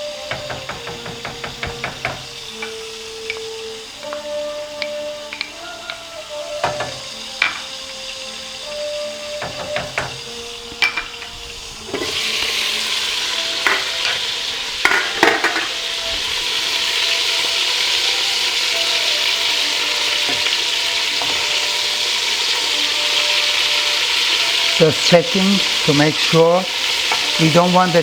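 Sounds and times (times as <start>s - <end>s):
chicken sizzling in a pan: 0.0s - 28.0s
utensil knocking against pan: 0.2s - 8.1s, 8.7s - 11.3s, 13.4s - 16.1s, 20.0s - 28.0s.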